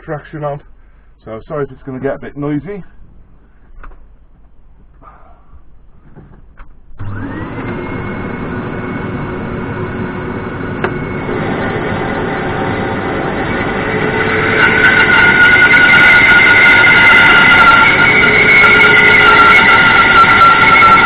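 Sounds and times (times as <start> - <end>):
dust extractor motor whine: 6.9 - 21.0
steady machine tones: 7.9 - 21.0.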